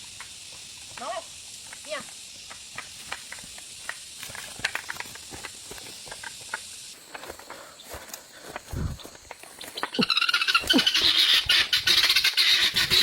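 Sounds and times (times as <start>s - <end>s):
fire crackling and popping: 0.0s - 7.2s
fire hissing: 0.0s - 9.8s.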